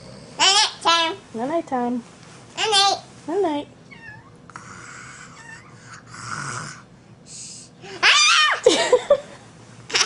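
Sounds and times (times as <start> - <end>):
toddler pretend snoring: 4.5 - 6.9.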